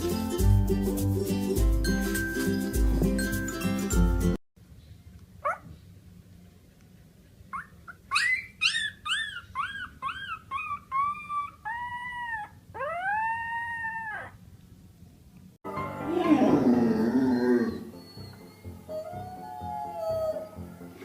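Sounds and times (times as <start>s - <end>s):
dog howling and yelping: 7.6s - 14.4s, 16.2s - 20.7s.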